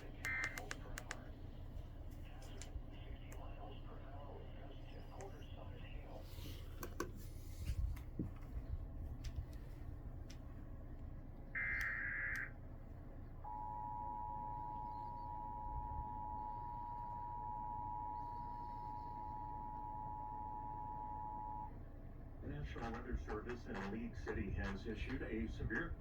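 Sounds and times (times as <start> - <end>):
steady two-tone attention signal: 13.5 - 21.7.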